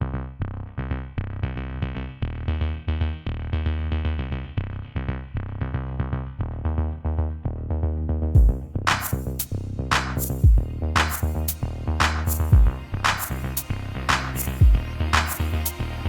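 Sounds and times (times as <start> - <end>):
heavy synth bass line: 0.0 - 16.0
drum machine beat: 8.4 - 15.8.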